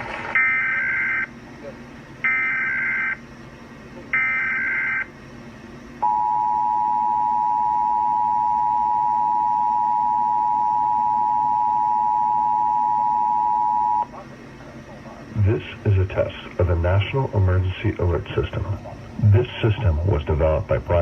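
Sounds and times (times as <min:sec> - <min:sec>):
two-tone attention signal: 0:06.0 - 0:14.1.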